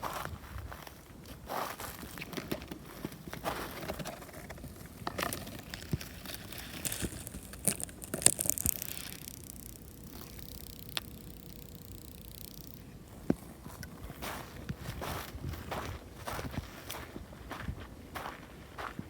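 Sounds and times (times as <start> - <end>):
footsteps crunching on dry leaves: 0.0 - 9.2, 13.1 - 19.0.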